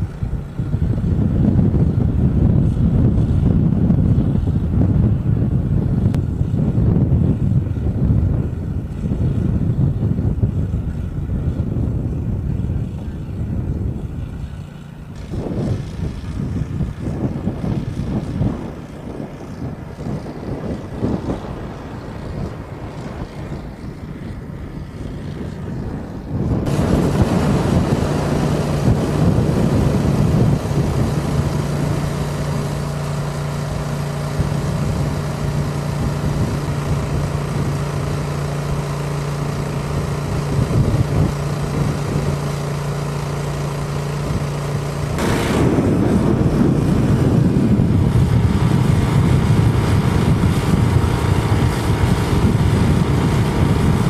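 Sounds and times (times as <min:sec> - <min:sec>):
constant rushing noise: 0:00.0 - 0:54.0
engine-like hum: 0:00.0 - 0:54.0.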